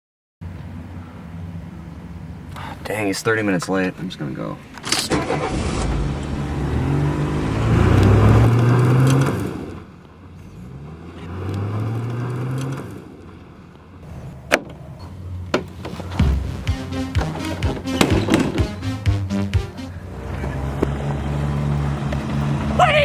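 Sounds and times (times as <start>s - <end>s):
car engine accelerating: 4.9s - 23.0s.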